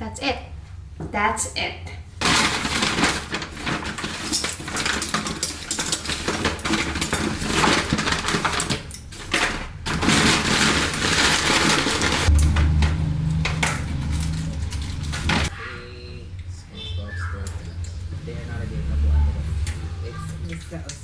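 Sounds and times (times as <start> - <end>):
cutlery clattering: 2.2 - 12.7, 13.3 - 15.5
food packaging crinkling: 2.2 - 15.5.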